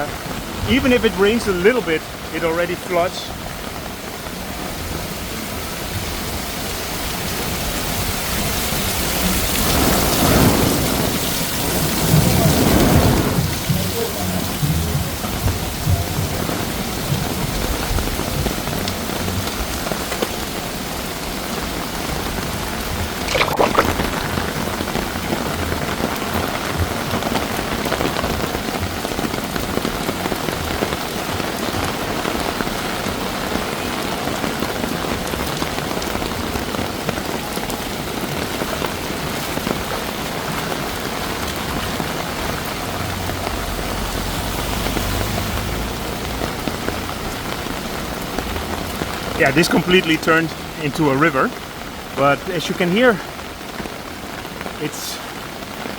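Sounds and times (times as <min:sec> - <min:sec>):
heavy rain pouring: 0:00.0 - 0:55.9
thunder rumbling: 0:09.2 - 0:20.2, 0:22.1 - 0:37.3.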